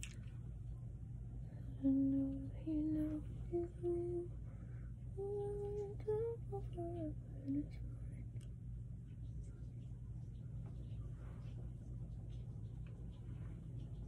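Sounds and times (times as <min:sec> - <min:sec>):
low steady hum: 0:00.0 - 0:14.0
woman humming a slow tune: 0:01.7 - 0:04.3, 0:05.2 - 0:08.1.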